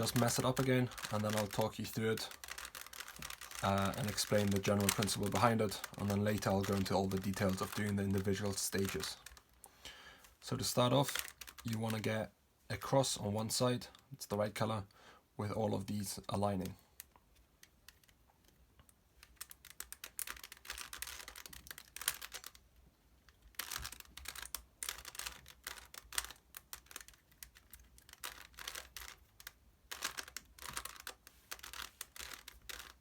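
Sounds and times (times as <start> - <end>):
plastic puzzle cube clicking: 0.0 - 9.6, 11.0 - 12.0, 16.6 - 22.7, 23.3 - 33.0.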